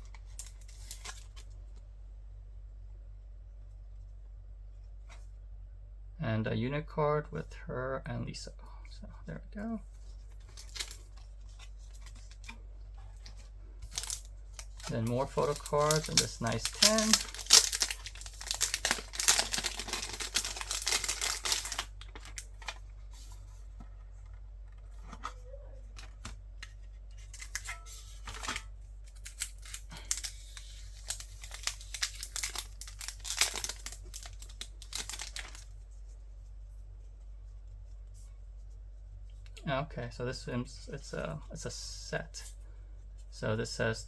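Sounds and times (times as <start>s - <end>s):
plastic wrapping crinkling and tearing: 0.0s - 1.5s, 10.3s - 12.6s, 13.2s - 23.3s, 27.1s - 35.8s
handling rustles and clicks: 10.1s - 35.8s.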